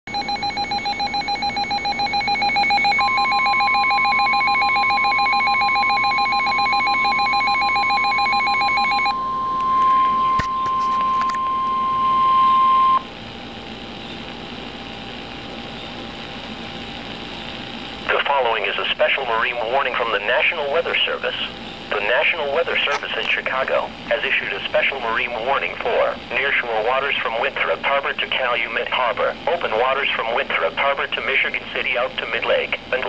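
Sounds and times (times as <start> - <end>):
pulsing electronic alert beeps: 0.1 - 13.0
steady high alarm tone: 0.1 - 13.1
radio hiss: 9.6 - 33.0.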